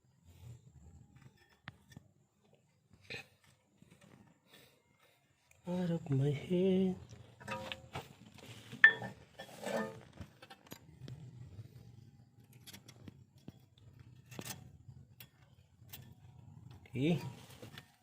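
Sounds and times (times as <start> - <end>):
metal clips clinking and scraping: 14.2 - 16.2.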